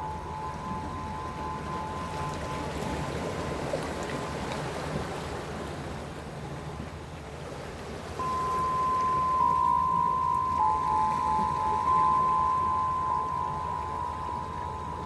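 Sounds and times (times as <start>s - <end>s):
chime-like ringing tone: 0.0s - 4.2s, 8.2s - 15.0s
sea waves washing: 0.0s - 15.0s.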